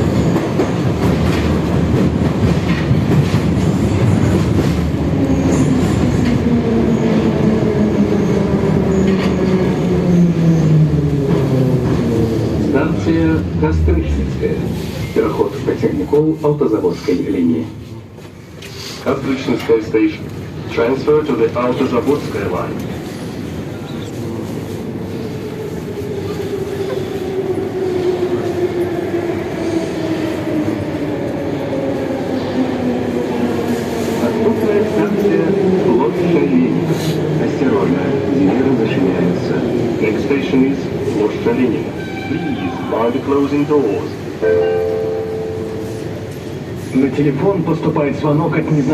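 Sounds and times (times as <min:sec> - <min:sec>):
train wheels rumbling on rails: 0:00.0 - 0:17.1.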